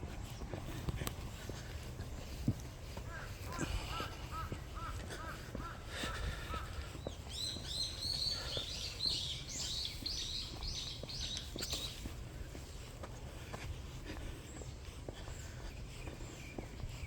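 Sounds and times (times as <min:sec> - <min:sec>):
faint footsteps on a path: 0:00.0 - 0:17.0
songbird chirping: 0:00.2 - 0:17.0.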